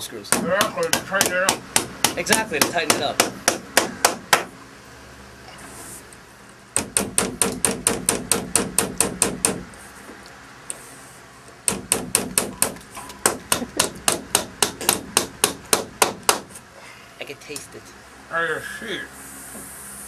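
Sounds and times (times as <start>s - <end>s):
hammer driving nails into wood: 0.3s - 4.5s, 6.8s - 9.6s, 11.6s - 16.6s.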